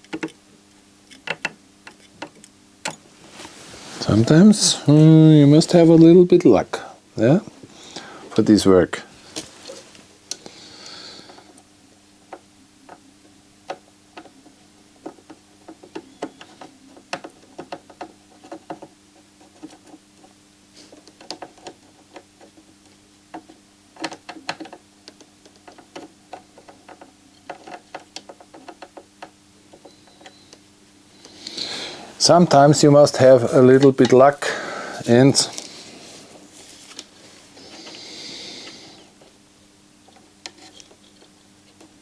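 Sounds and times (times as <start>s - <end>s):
faint steady hum: 0.0s - 42.0s
hand tools clicking and tapping: 1.1s - 3.0s, 15.0s - 30.6s.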